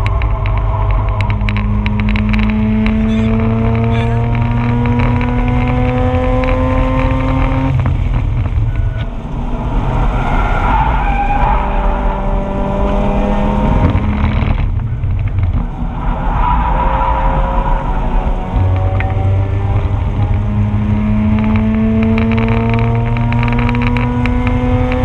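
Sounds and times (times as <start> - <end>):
rotary engine revving hard: 1.7 - 7.7
tyres squealing: 2.9 - 4.4.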